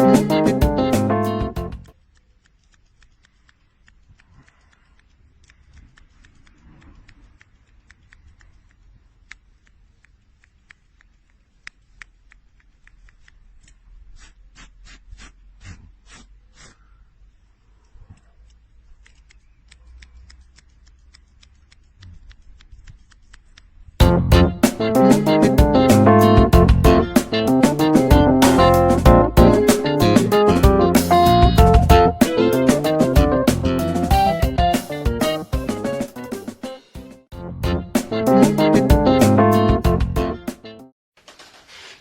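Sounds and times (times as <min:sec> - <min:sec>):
faint clicks: 0:01.9 - 0:13.8, 0:17.8 - 0:23.9.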